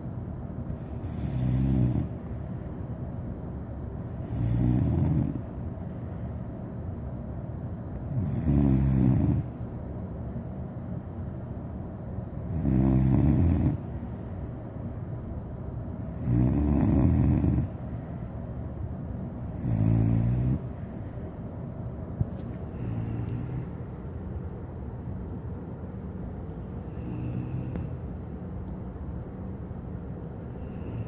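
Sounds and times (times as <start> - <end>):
puppy snoring: 0.7 - 2.8, 4.1 - 6.2, 8.0 - 9.7, 12.4 - 14.7, 16.0 - 18.4, 19.4 - 21.5, 22.2 - 24.3, 26.0 - 28.3, 30.4 - 31.0.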